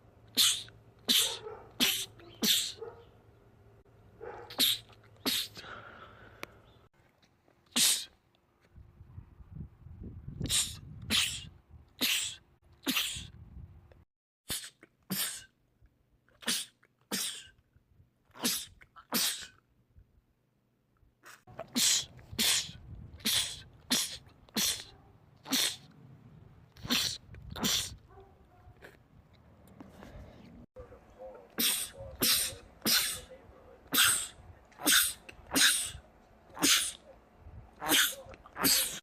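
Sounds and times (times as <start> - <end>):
men sneezing: 0.4 - 2.8, 4.5 - 5.8, 10.5 - 13.3, 14.5 - 15.5, 18.4 - 19.6, 21.6 - 24.9, 25.5 - 25.9, 31.6 - 36.0, 36.6 - 37.0, 37.8 - 39.0.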